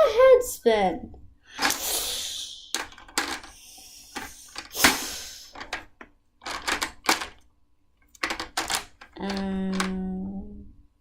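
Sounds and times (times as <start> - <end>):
hard objects clacking together: 2.7 - 7.4, 8.0 - 10.0.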